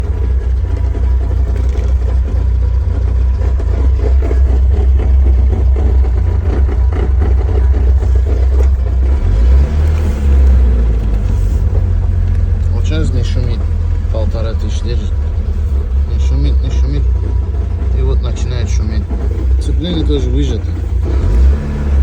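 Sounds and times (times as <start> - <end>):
car engine rumbling: 0.0 - 22.0
gearbox knocking and rattling: 0.0 - 22.0.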